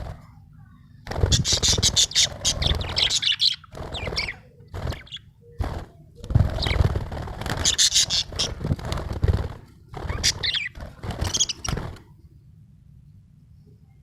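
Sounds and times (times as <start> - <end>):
budgerigar chirping and warbling: 1.3 - 5.3, 7.6 - 8.6, 10.1 - 11.7.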